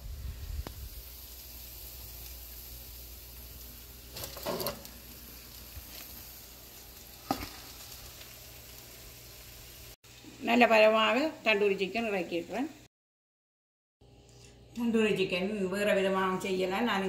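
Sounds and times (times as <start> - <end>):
faint sizzling of chicken: 0.0 - 12.9
tray clatter: 4.1 - 4.9.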